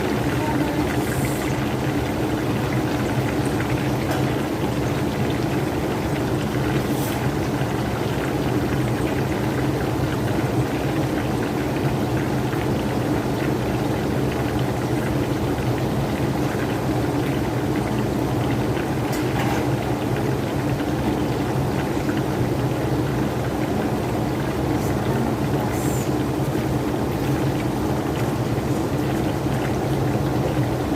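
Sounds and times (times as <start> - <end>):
chicken sizzling in hot oil: 0.0 - 30.9
low steady hum: 13.2 - 30.9.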